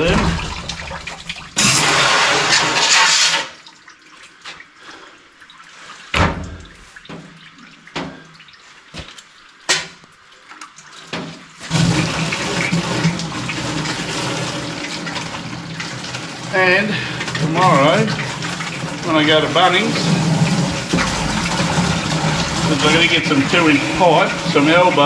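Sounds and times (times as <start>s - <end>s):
water pouring into plastic container: 0.0s - 7.0s, 11.5s - 25.0s
hose sputtering spurts: 11.7s - 25.0s.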